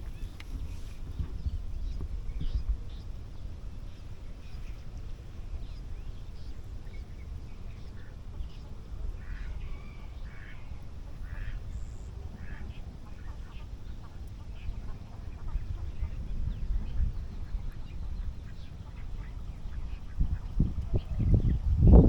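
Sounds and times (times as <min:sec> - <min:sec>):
ducks quacking: 0:10.3 - 0:16.2.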